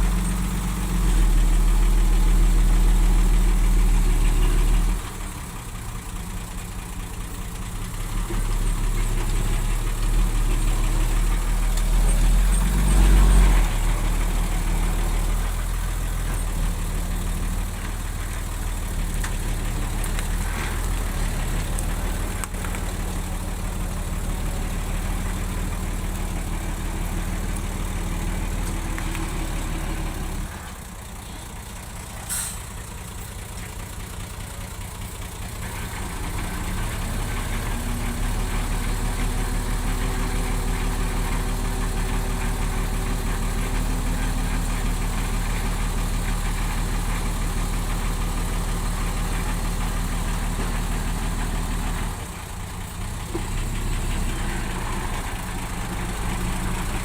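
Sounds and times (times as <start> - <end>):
heavy diesel engine running: 0.0 - 57.0
short hiss: 32.2 - 32.8.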